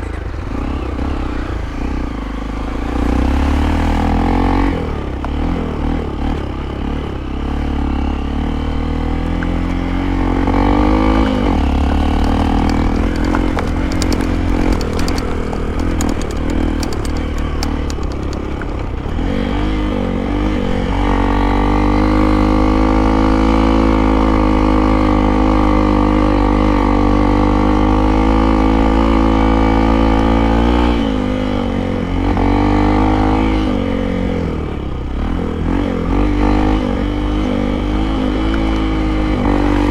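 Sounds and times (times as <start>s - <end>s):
motorcycle engine running: 0.0s - 39.9s
rapid clattering clicks: 11.2s - 19.2s.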